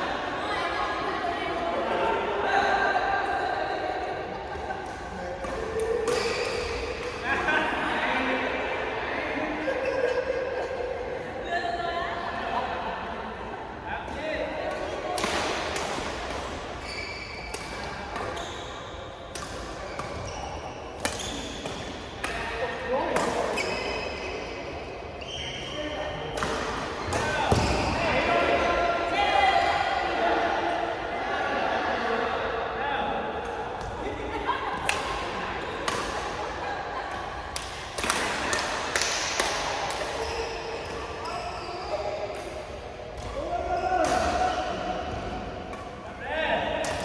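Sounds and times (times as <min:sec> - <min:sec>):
sports hall background: 0:00.0 - 0:47.0
racket hitting shuttlecock: 0:05.4 - 0:07.2, 0:14.7 - 0:16.8, 0:17.4 - 0:18.4, 0:19.2 - 0:20.3, 0:20.9 - 0:23.7, 0:34.7 - 0:36.5, 0:37.1 - 0:41.0, 0:44.0 - 0:46.0, 0:46.7 - 0:47.0
shoes squeaking on court floor: 0:16.8 - 0:22.0, 0:23.4 - 0:28.0, 0:40.2 - 0:42.3.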